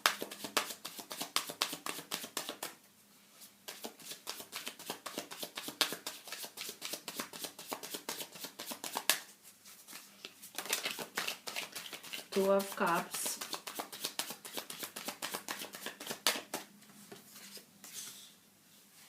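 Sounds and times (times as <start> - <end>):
cards being shuffled: 3.7 - 17.7.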